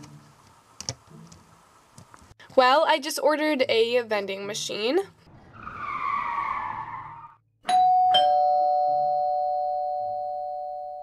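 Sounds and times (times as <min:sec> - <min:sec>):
two-note doorbell chime: 0:07.7 - 0:11.0.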